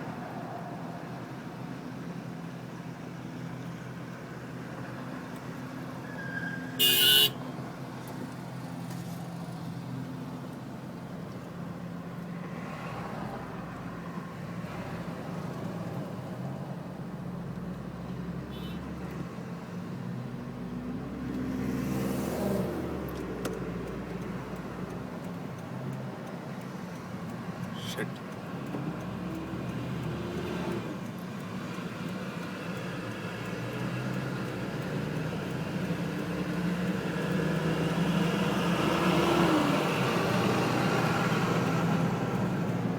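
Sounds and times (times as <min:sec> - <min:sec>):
loud horn blast: 0:06.8 - 0:07.4.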